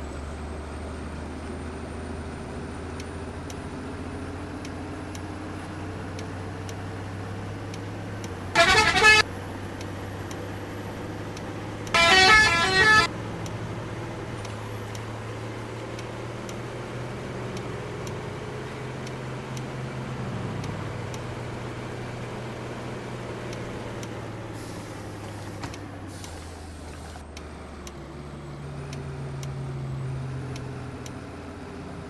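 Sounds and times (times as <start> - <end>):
bus engine idling: 8.4 - 9.2, 11.9 - 13.1
bus multi-tone horn: 8.5 - 9.3, 11.9 - 13.1.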